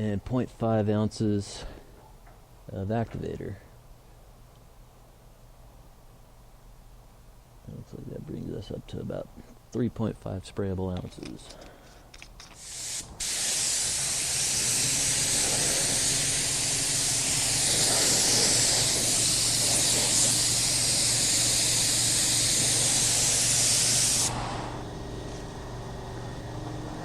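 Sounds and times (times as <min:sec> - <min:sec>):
steady low hum: 0:00.0 - 0:27.0
spray gun trigger burst: 0:12.6 - 0:24.6
hiss of air and atomised paint: 0:12.6 - 0:24.9.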